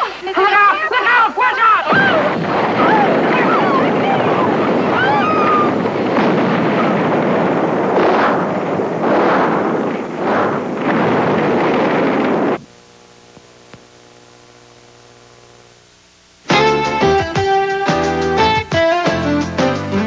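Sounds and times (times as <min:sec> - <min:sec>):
faint steady hum: 0:00.0 - 0:18.4
explosion and fire rushing: 0:01.9 - 0:12.6.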